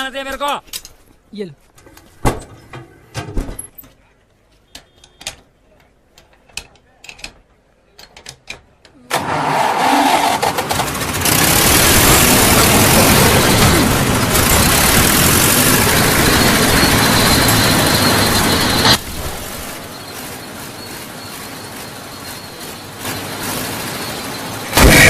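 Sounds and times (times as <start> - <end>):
spanner clicks and knocks: 6.2 - 8.7
road roller engine roaring: 9.1 - 25.0.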